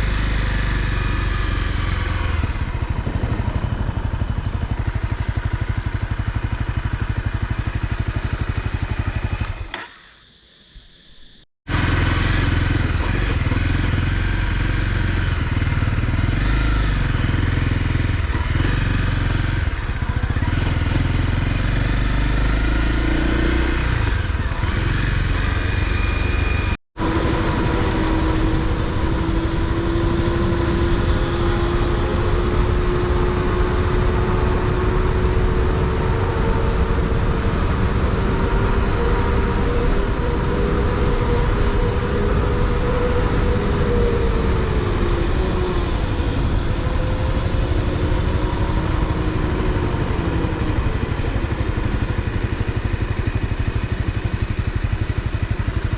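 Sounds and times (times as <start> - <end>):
motorcycle engine running: 0.0 - 10.4, 11.2 - 55.9
heavy low rumble: 1.9 - 9.6.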